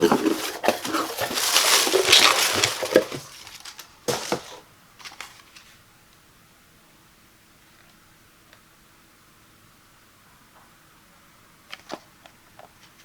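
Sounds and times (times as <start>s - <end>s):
packaging crinkling: 0.0s - 5.7s
packaging rustle: 0.0s - 5.8s.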